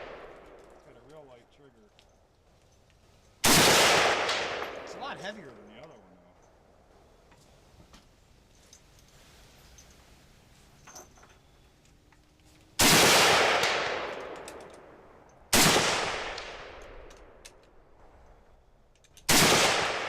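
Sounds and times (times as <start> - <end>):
rifle shots with echo: 0.0 - 0.9, 3.4 - 5.2, 12.8 - 17.4, 19.3 - 20.0.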